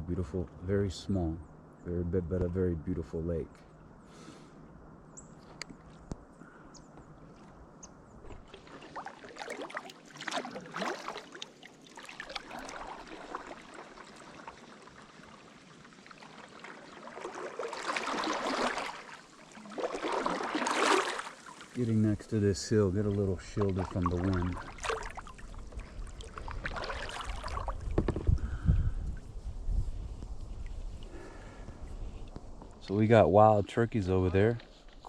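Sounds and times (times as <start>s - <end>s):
paddle strokes splashing water: 8.2s - 28.5s
water trickling off paddle: 8.2s - 29.3s.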